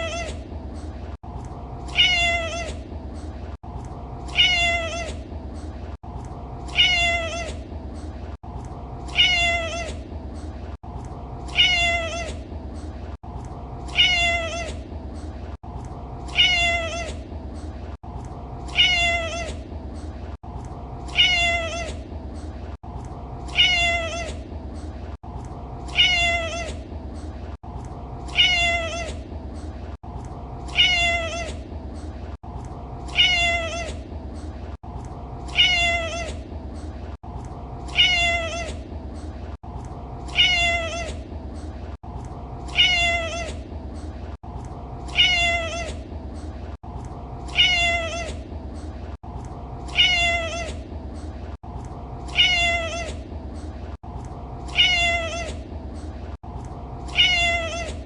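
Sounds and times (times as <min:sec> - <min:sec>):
cat meowing: 0:00.0 - 0:00.4, 0:01.9 - 0:02.8, 0:04.3 - 0:05.2, 0:06.7 - 0:07.6, 0:09.1 - 0:10.0, 0:11.5 - 0:12.4, 0:13.9 - 0:14.8, 0:16.3 - 0:17.2, 0:18.7 - 0:19.6, 0:21.1 - 0:22.0, 0:23.5 - 0:24.4, 0:25.9 - 0:26.8, 0:28.3 - 0:29.2, 0:30.7 - 0:31.6, 0:33.1 - 0:34.0, 0:35.5 - 0:36.4, 0:37.9 - 0:38.8, 0:40.3 - 0:41.2, 0:42.7 - 0:43.6, 0:45.1 - 0:46.0, 0:47.5 - 0:48.4, 0:49.9 - 0:50.8, 0:52.3 - 0:53.2, 0:54.7 - 0:55.6, 0:57.1 - 0:58.0.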